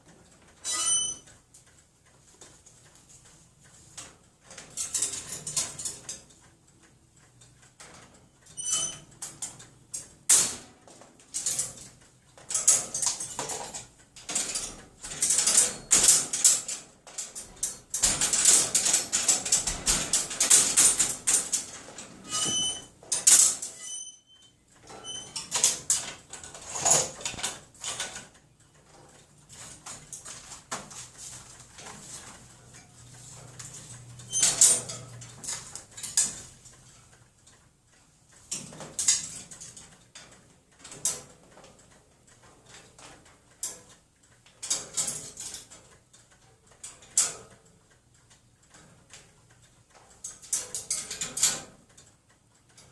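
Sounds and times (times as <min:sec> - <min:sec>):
wire cage doors rattling: 0:04.4 - 0:06.3, 0:07.8 - 0:24.1, 0:24.8 - 0:36.6, 0:44.6 - 0:45.8, 0:50.2 - 0:51.8.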